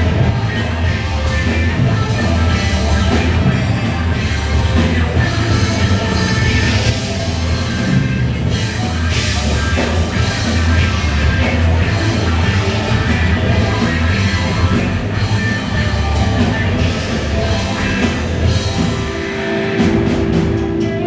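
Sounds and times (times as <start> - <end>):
distorted rock instruments: 0.0 - 21.0
drum kit beat: 0.0 - 21.0.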